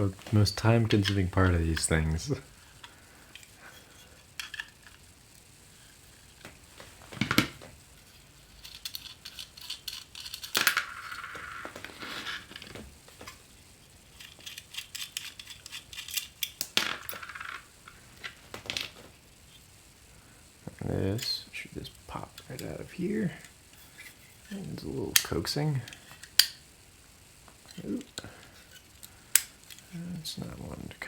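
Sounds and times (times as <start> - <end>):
wrench clicking on metal nuts: 8.6 - 10.8, 14.2 - 17.2.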